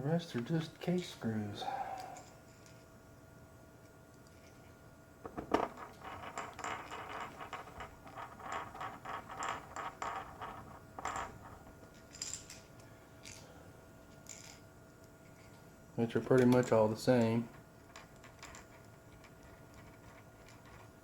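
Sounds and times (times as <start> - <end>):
small metal screws clinking: 5.3 - 13.5, 14.2 - 14.6, 16.3 - 20.9.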